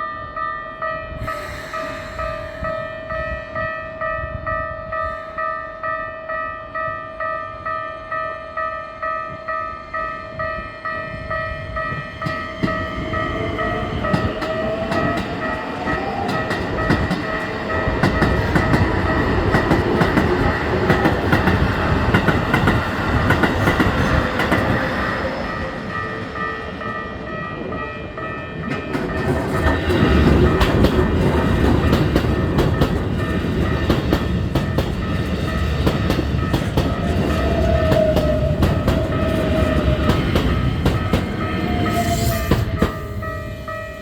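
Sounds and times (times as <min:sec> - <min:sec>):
level crossing warning bell: 0:00.0 - 0:44.0
train whine: 0:00.0 - 0:44.0
train wheels clattering: 0:11.3 - 0:44.0.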